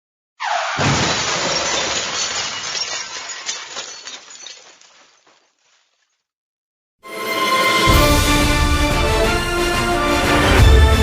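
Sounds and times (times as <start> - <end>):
glass shattering: 0.6 - 6.2.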